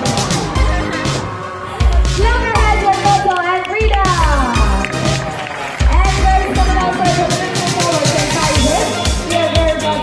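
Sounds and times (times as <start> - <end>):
music with steady bass beat: 0.0 - 10.0.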